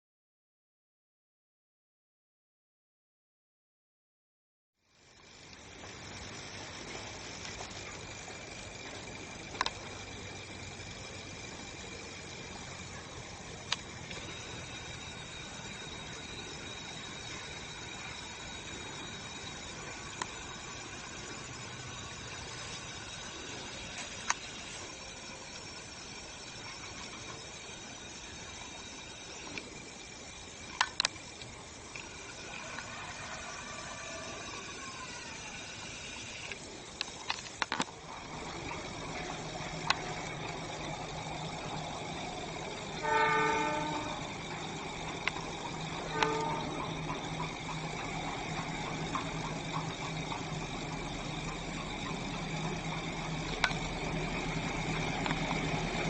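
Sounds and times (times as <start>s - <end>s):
outdoor background noise: 4.8s - 56.0s
faint high steady tone: 4.9s - 56.0s
low background hum: 4.9s - 56.0s
train horn blasts: 42.9s - 44.9s, 45.6s - 47.1s.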